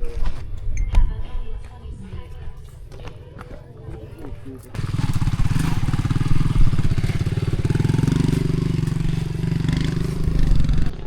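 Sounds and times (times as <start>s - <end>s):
motorcycle engine running: 4.7s - 11.0s.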